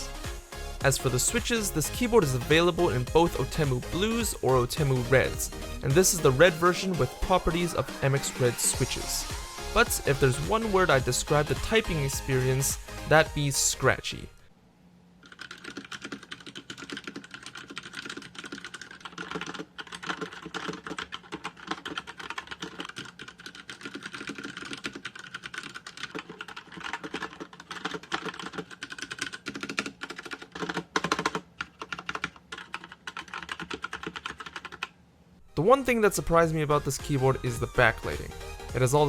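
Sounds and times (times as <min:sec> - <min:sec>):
mechanical keyboard typing: 0:15.2 - 0:34.9.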